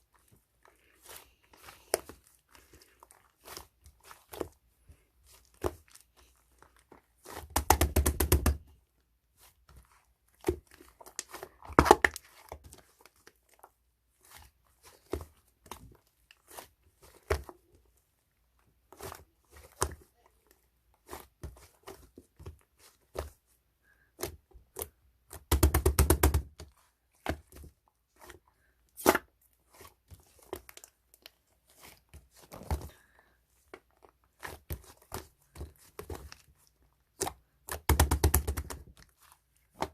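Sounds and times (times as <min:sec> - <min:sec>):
slime squished by hand: 0:24.1 - 0:39.9.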